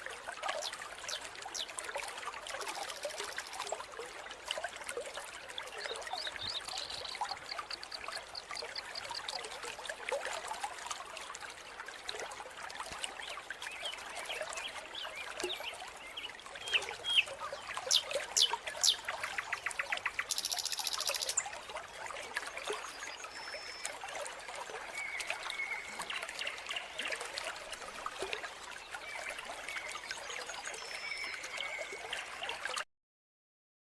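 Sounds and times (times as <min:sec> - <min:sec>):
stream water trickling: 0:00.0 - 0:32.9
small animals chirping: 0:20.2 - 0:21.4.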